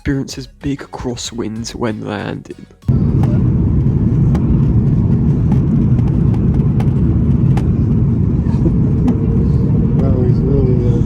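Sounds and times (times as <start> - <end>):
wind buffeting microphone: 2.9 - 11.0.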